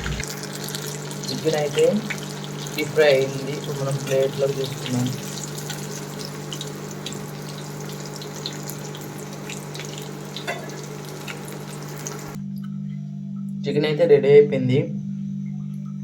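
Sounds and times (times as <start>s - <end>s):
hot oil sizzling and popping: 0.0s - 12.4s
steady low hum: 0.0s - 16.0s.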